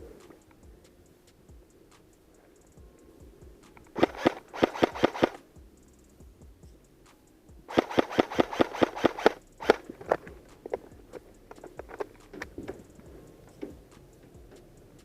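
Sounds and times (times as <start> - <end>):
airsoft gun rapid shots: 3.6 - 5.6, 7.7 - 10.7.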